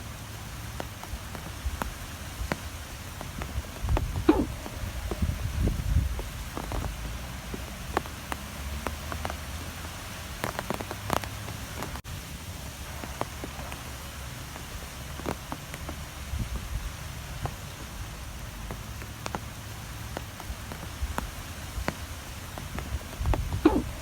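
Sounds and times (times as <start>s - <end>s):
sharp ticks and taps: 0.4s - 12.0s, 17.3s - 24.0s
strong wind blowing: 1.2s - 8.0s, 20.9s - 24.0s.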